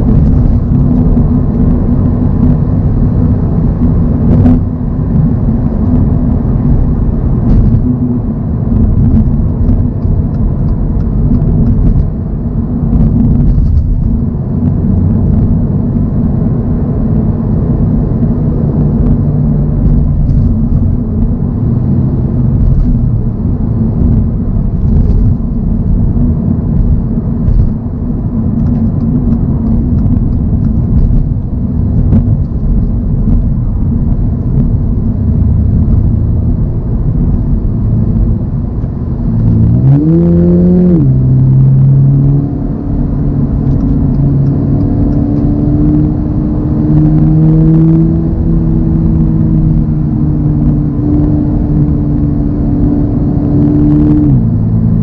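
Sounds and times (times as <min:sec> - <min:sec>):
car engine revving: 0:00.0 - 0:55.0
road noise: 0:00.0 - 0:55.0.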